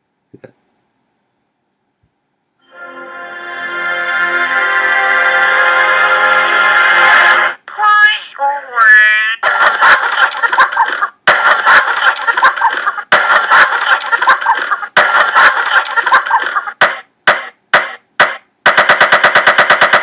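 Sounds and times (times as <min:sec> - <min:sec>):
chopped sample music: 0:02.7 - 0:07.6, 0:12.8 - 0:20.0.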